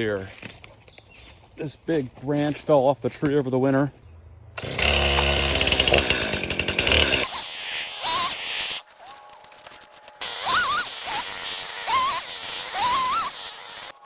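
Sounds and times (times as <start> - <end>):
chainsaw running: 4.6 - 14.0.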